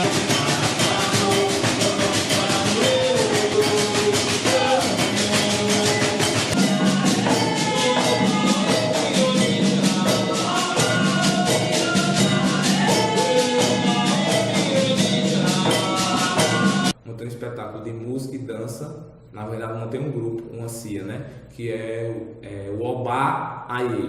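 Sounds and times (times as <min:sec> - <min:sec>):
fast percussion with shaker and tambourine: 0:00.0 - 0:17.0.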